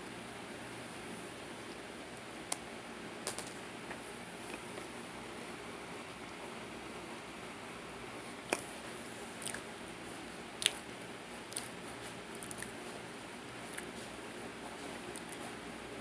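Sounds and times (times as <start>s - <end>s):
crunchy food being eaten: 9.3s - 9.8s, 10.6s - 12.8s, 13.6s - 14.1s, 15.1s - 15.6s.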